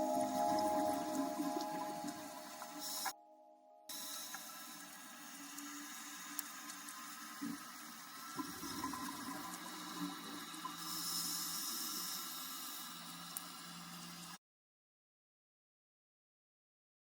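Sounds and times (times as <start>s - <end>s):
underwater rush of water: 3.9s - 12.9s.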